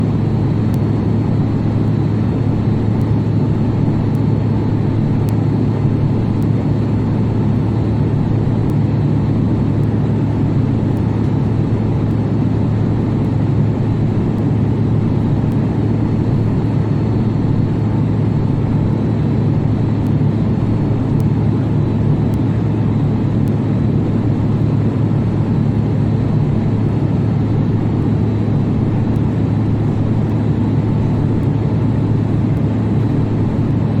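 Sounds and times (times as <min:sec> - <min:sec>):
aircraft engine and airflow drone: 0:00.0 - 0:34.0.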